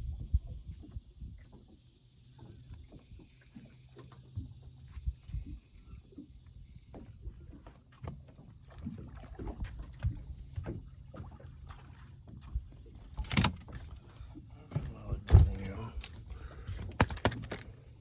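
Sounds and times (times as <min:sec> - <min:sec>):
knocks and bumps in a boat: 0:00.0 - 0:18.0.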